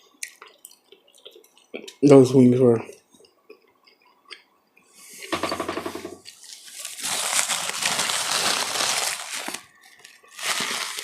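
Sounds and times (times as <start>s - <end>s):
wet chewing and smacking: 0.2s - 2.0s.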